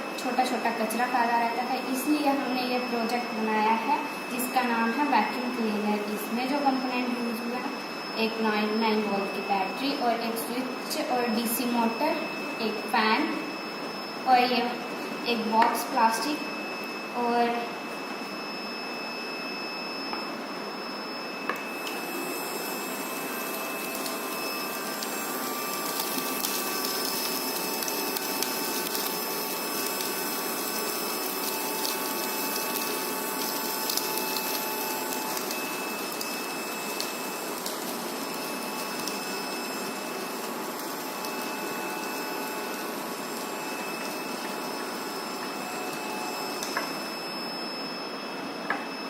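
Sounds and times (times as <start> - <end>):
small vacuum motor whirring: 20.8 - 49.0.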